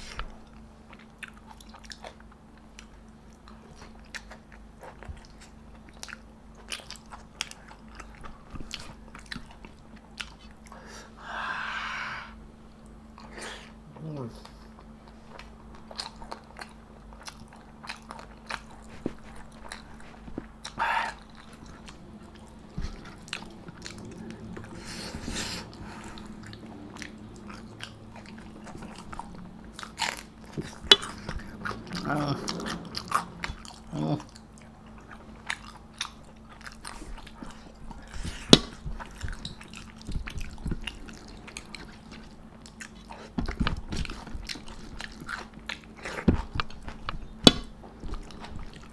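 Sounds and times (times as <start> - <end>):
person chewing and crunching: 0.0 - 10.8, 12.8 - 48.9
faint steady hum: 0.0 - 48.9
person humming briefly: 31.5 - 34.3.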